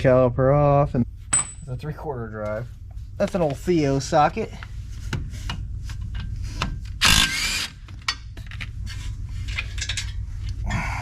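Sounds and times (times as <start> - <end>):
power tool burst: 7.0 - 7.8.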